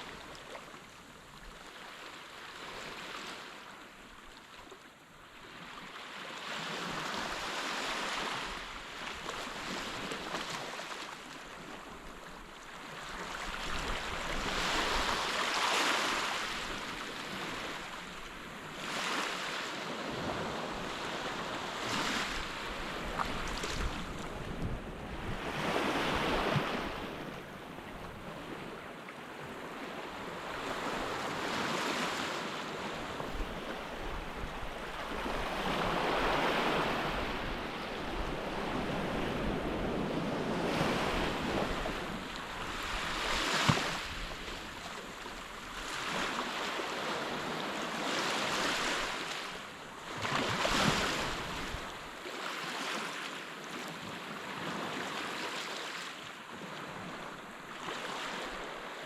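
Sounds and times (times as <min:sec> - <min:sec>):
small waves breaking on beach: 0:00.0 - 0:59.0.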